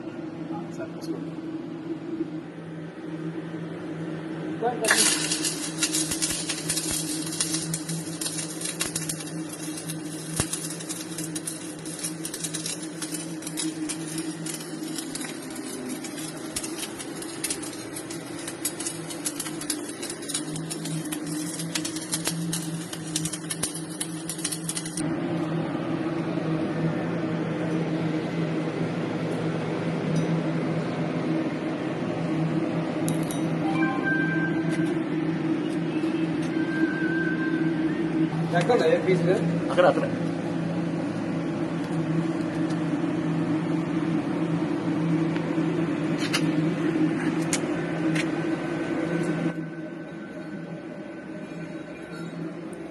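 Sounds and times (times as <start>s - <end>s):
welding machine humming: 2.9s - 52.9s
arc welding buzzing hiss: 4.6s - 25.0s
sharp crackling: 4.9s - 25.0s.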